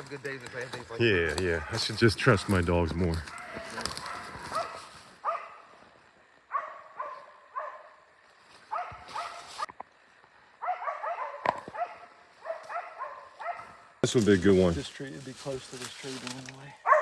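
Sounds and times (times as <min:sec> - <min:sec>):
dogs barking: 0:03.2 - 0:05.8, 0:06.5 - 0:08.0, 0:08.7 - 0:09.7, 0:10.6 - 0:14.0.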